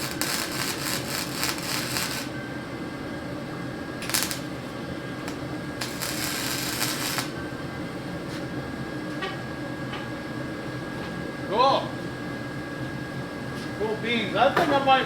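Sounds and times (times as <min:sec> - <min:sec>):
crackling welding arc: 0:00.0 - 0:02.4, 0:04.0 - 0:04.6, 0:05.2 - 0:07.4.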